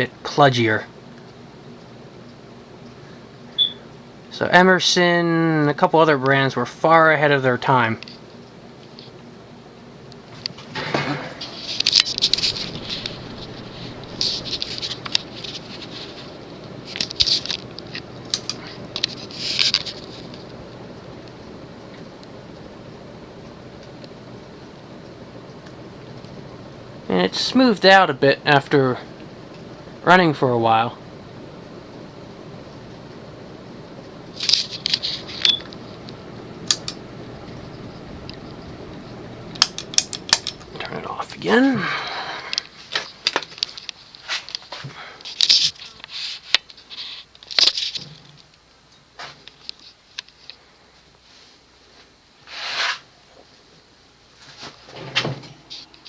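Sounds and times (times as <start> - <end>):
ceiling fan motor humming: 0.0 - 56.0
scratchy rustling: 11.4 - 17.7, 19.0 - 20.6, 52.4 - 53.1
sharp clicks: 34.4 - 37.6, 38.2 - 40.7.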